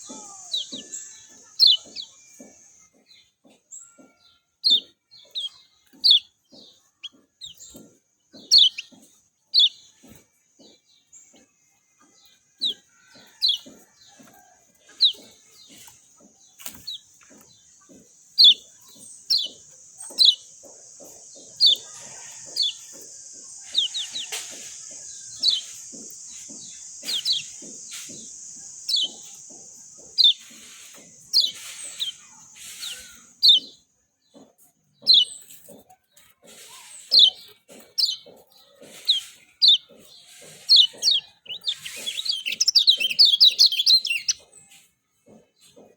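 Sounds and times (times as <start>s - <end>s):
songbird chirping: 0.0s - 45.9s
steady high hiss: 20.2s - 33.4s.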